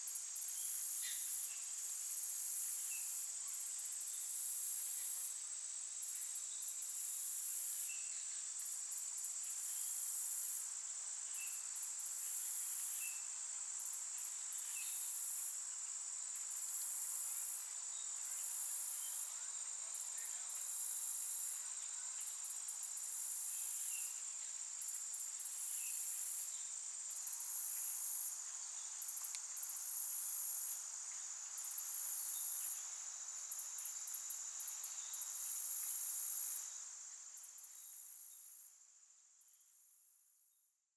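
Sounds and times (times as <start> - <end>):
insects trilling: 0.0 - 38.7.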